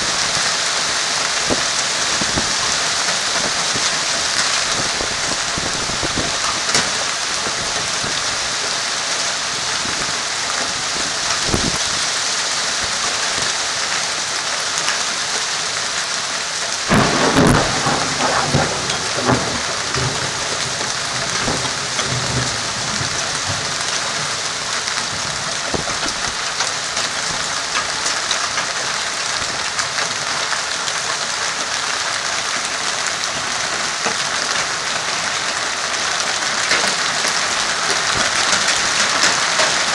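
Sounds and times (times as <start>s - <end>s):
heavy rain and hail: 0.0s - 39.9s
thunder clap rumbling: 16.9s - 24.5s.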